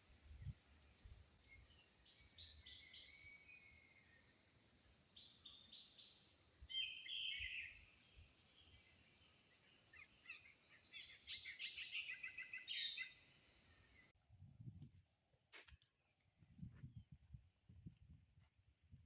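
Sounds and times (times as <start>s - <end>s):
birds chirping: 0.0s - 14.1s.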